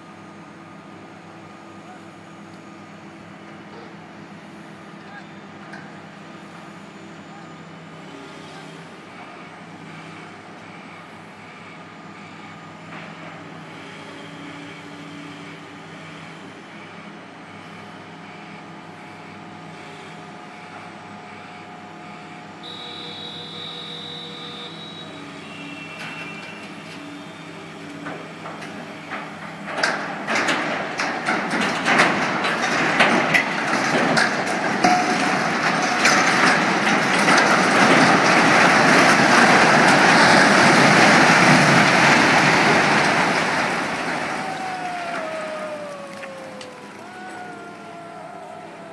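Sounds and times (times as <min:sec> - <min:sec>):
masonry crashing and rumbling: 0:29.8 - 0:47.4.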